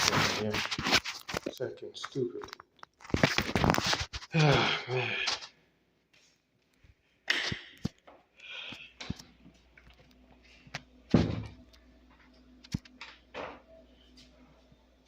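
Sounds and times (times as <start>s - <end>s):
faint steady hum: 4.4s - 15.0s.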